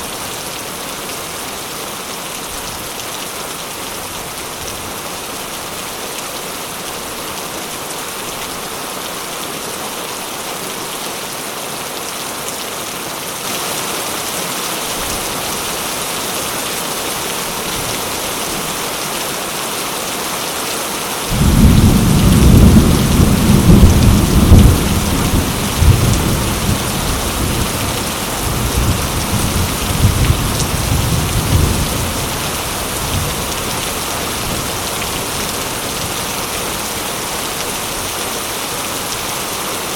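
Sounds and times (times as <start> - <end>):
heavy rain falling: 0.0 - 39.9
thunder rumbling: 21.3 - 32.4.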